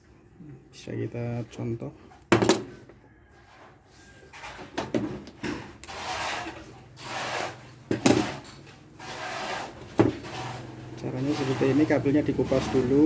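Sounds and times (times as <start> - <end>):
cable and tools scraping: 3.4 - 13.0.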